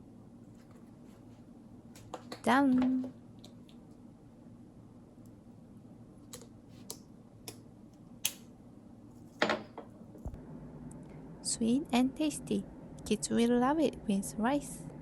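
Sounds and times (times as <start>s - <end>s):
faint hum: 0.0s - 15.0s.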